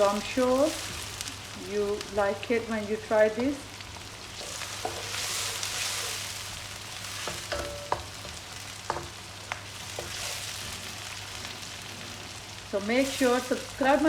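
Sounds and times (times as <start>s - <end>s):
onion sizzling in a pan: 0.0s - 14.0s
utensil clinking against pan: 7.2s - 9.1s.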